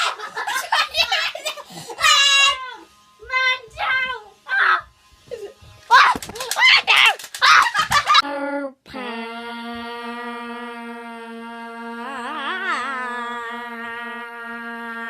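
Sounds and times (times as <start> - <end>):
child wailing: 1.9 - 2.8, 5.9 - 8.2
voice holding long note: 8.2 - 15.0.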